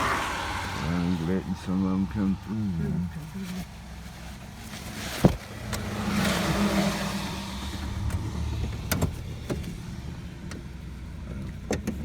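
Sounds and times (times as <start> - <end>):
car tyres hissing on wet road: 0.0 - 8.6.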